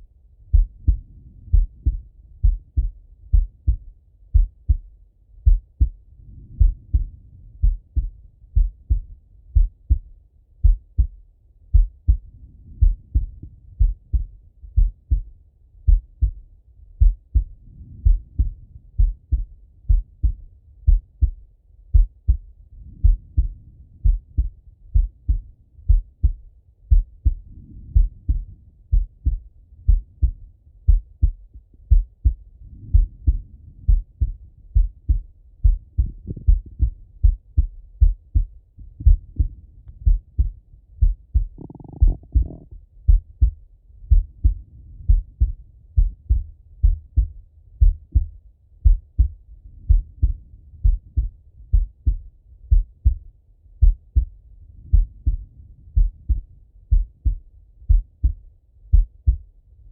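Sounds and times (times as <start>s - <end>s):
heartbeat through stethoscope: 0.0s - 59.5s.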